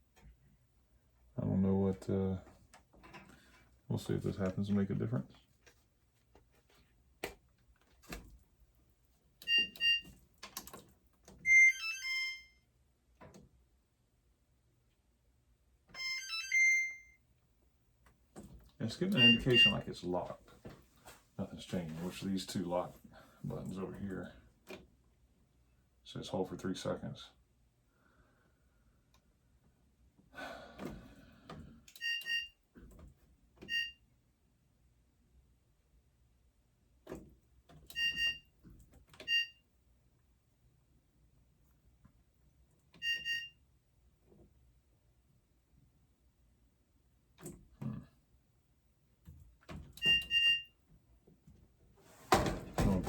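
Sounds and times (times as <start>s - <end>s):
dryer control panel beeping: 9.4s - 12.5s, 19.1s - 19.9s, 31.9s - 32.6s, 33.6s - 34.0s, 37.9s - 38.5s, 39.1s - 39.6s, 43.0s - 43.6s, 49.8s - 50.7s
short beeps: 19.2s - 19.8s.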